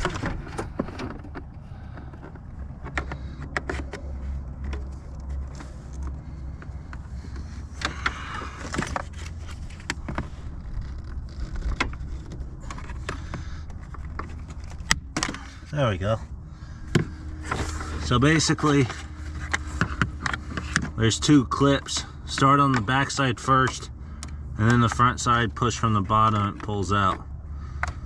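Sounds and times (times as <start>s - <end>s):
low steady hum: 0.0s - 28.0s
scraping rustle: 8.4s - 14.9s.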